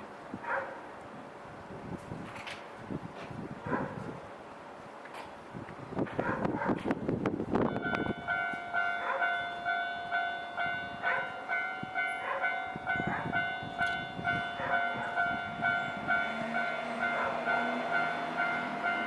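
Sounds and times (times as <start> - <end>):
level-crossing warning bell: 7.6 - 19.0.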